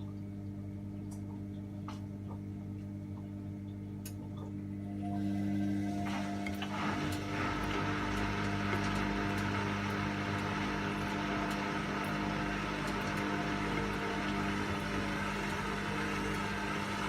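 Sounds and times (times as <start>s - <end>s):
washing machine motor hum: 0.0s - 17.0s.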